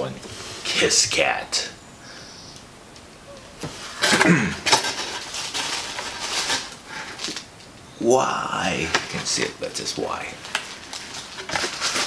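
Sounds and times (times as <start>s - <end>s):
packaging rustling and crinkling: 3.6s - 7.5s, 10.3s - 12.0s.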